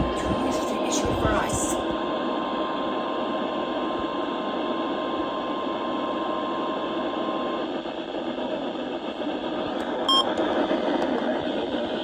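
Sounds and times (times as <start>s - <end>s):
radio static hiss: 0.0s - 1.9s.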